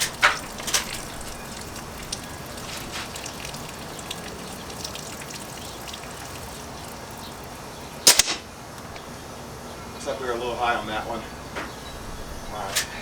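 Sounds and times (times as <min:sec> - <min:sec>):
steady background hiss: 0:06.6 - 0:13.0
air rifle firing: 0:08.0 - 0:08.5.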